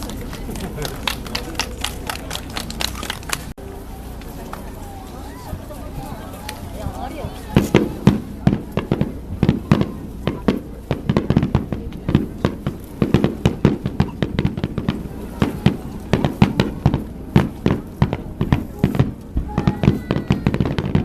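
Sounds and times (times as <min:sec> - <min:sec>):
fireworks bangs and crackles: 0:05.5 - 0:21.0.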